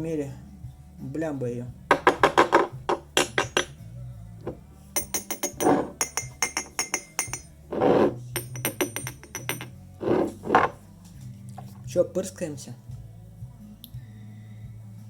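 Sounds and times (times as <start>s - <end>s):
metal cap clicking against glass: 2.0s - 3.8s, 4.5s - 10.8s.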